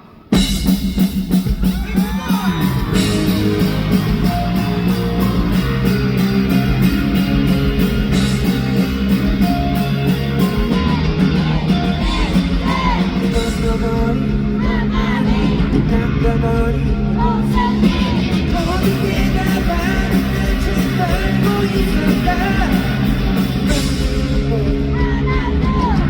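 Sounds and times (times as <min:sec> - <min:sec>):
guitars: 0:00.0 - 0:26.0
drums steady beat: 0:00.2 - 0:26.0
person singing lead vocal: 0:10.1 - 0:26.0.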